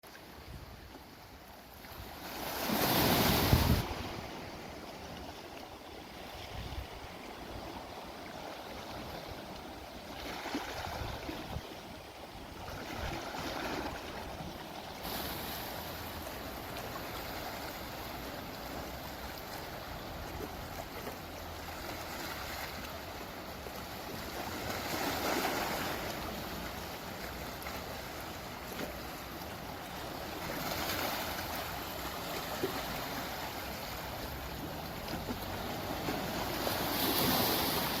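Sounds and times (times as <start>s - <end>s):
sea waves washing onto shore: 0.0s - 38.0s
wind blowing: 2.7s - 4.8s.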